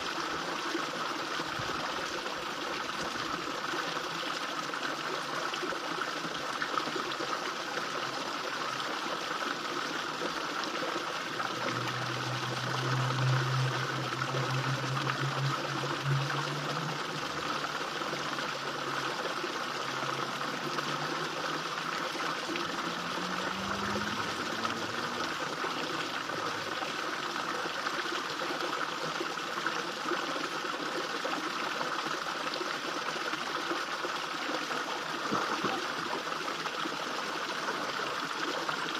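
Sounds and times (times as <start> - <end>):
small waterfall splashing: 0.0 - 38.9
low hum: 10.8 - 27.2
faint rising tone: 11.0 - 27.0.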